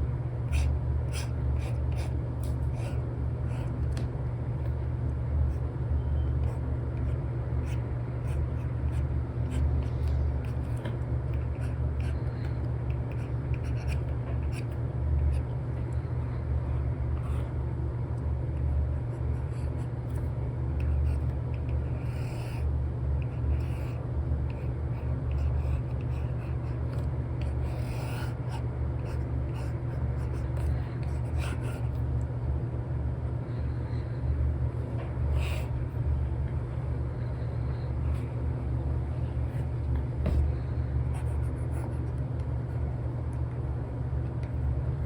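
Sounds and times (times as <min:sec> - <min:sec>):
low hum: 0:00.0 - 0:45.0
stylus scratching and tapping screen: 0:06.2 - 0:15.5.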